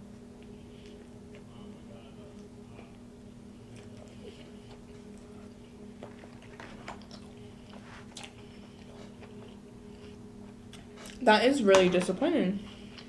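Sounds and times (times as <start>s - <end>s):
steady low hum: 0.0s - 13.0s
chewing crispy food: 3.6s - 11.3s.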